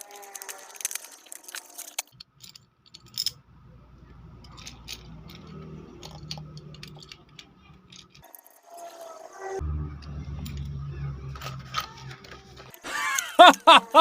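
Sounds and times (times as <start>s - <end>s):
small items clicking and rattling: 0.0s - 3.4s, 4.4s - 9.2s, 11.4s - 13.4s
low steady hum: 9.6s - 12.8s.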